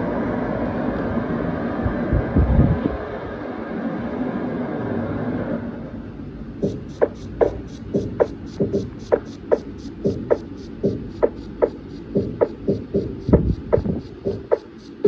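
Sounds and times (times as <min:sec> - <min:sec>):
hi-hat ticking: 0:06.6 - 0:15.0
kick drum hits: 0:07.4 - 0:08.9, 0:10.1 - 0:14.6.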